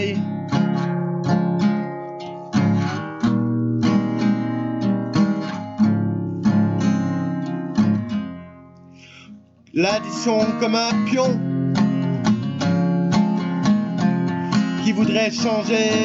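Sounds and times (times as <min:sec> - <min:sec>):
strummed acoustic guitar: 0:00.0 - 0:16.0.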